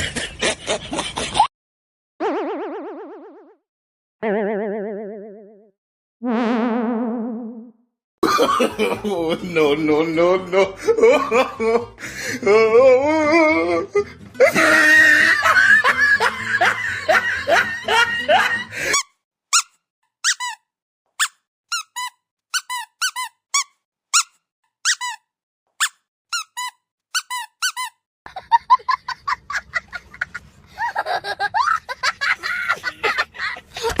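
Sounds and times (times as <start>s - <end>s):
comic high squeaks: 19.6s - 20.6s, 21.2s - 28.0s.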